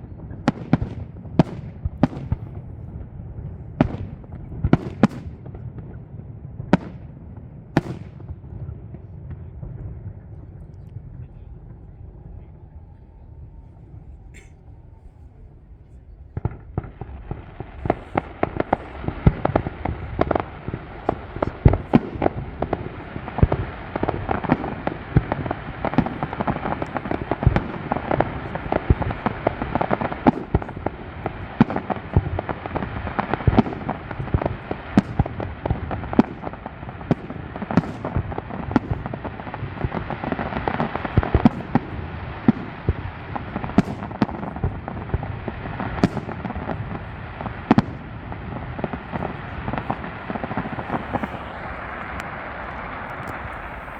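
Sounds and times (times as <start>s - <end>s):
fireworks bangs: 0.0s - 14.9s, 16.3s - 53.9s.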